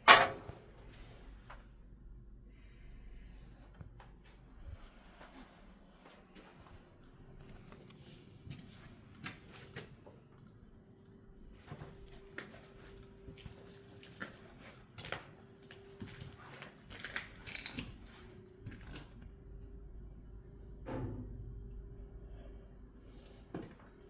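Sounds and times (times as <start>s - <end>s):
faint steady hum: 0.0s - 9.1s.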